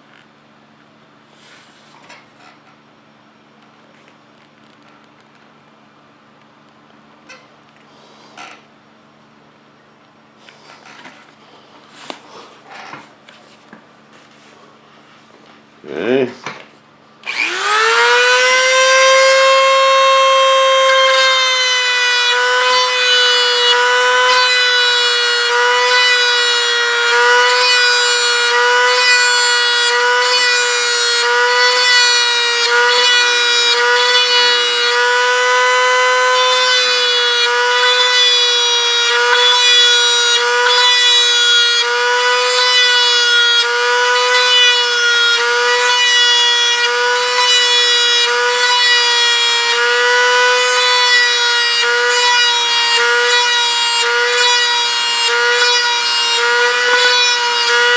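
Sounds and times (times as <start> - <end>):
rotary tool high whine: 17.2 - 57.9.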